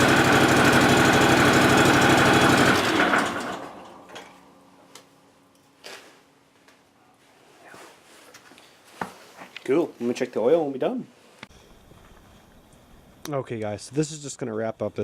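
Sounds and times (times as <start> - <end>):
lawn tractor engine running: 0.0 - 4.2.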